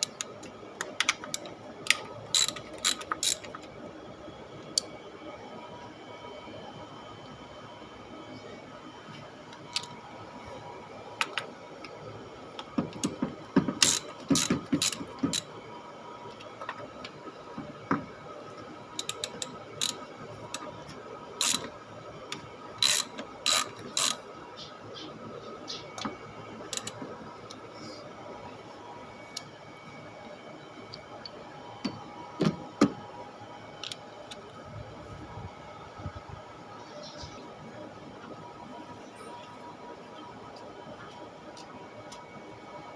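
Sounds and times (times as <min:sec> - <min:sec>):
socket ratchet clicking: 0:01.1 - 0:03.5, 0:13.8 - 0:15.5.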